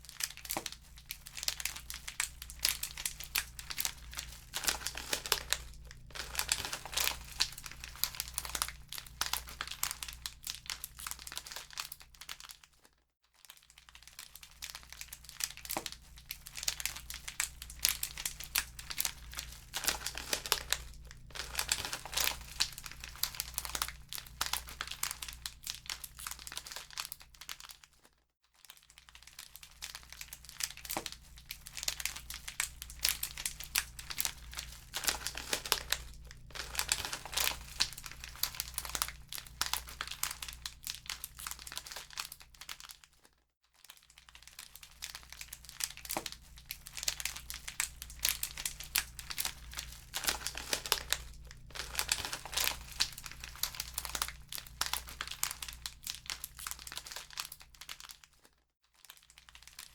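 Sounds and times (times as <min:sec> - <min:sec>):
low steady hum: 0:00.0 - 0:11.8, 0:14.9 - 0:27.0, 0:29.8 - 0:42.3, 0:44.8 - 0:57.4
wood fire crackling: 0:00.4 - 0:10.8, 0:16.6 - 0:25.0, 0:31.0 - 0:41.7, 0:45.6 - 0:56.9.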